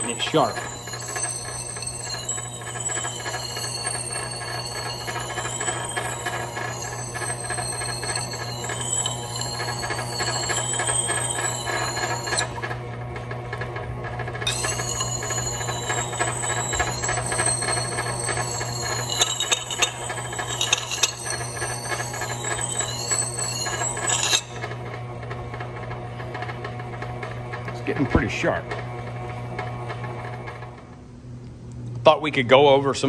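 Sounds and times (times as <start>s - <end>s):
axe blade scraping on grindstone: 0.0s - 12.6s, 14.5s - 24.6s
grindstone motor humming: 0.0s - 28.2s.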